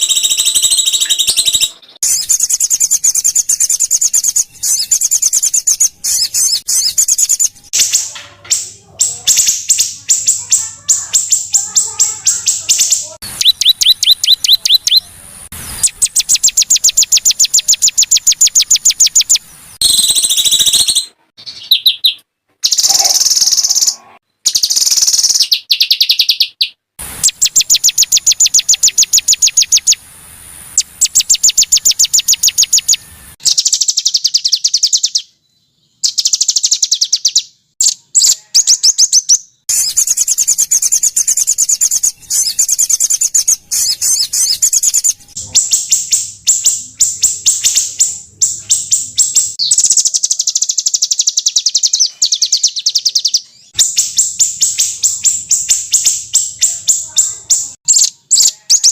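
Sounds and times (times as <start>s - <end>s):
songbirds trilling: 0.0s - 30.1s, 30.7s - 35.3s, 35.9s - 58.9s.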